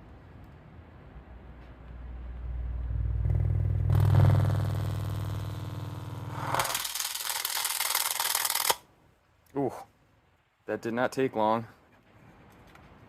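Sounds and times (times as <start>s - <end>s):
distorted deep bass from subwoofer: 2.0s - 6.6s
harsh crackling hiss: 3.8s - 8.8s.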